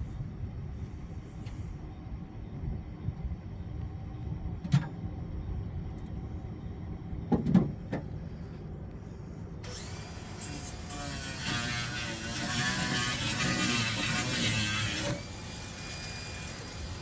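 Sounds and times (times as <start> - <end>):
steady low rumble: 0.0 - 10.3.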